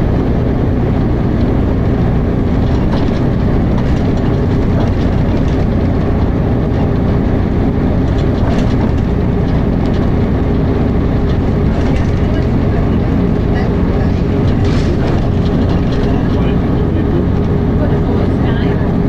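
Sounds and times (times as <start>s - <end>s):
bus engine rumble: 0.0s - 19.0s
light rattles: 2.4s - 7.1s, 7.9s - 10.3s, 11.2s - 18.6s.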